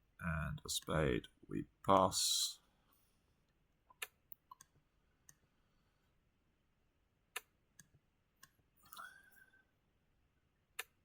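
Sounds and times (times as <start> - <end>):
computer mouse clicking: 3.9 - 5.4, 7.3 - 8.6, 10.8 - 11.0.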